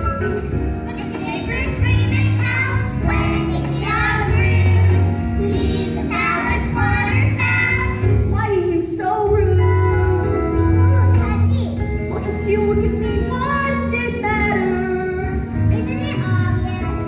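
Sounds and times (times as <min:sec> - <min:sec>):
instrumental accompaniment: 0:00.0 - 0:17.0
children singing: 0:01.0 - 0:11.5.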